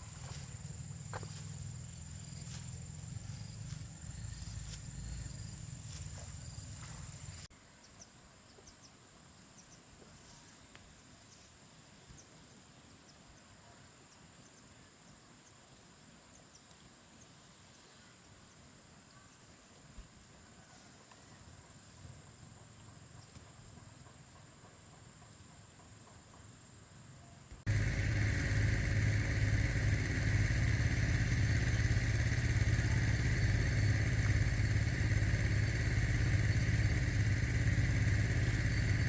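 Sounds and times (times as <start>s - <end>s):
high-pitched insect drone: 0.0s - 7.5s, 27.7s - 39.0s.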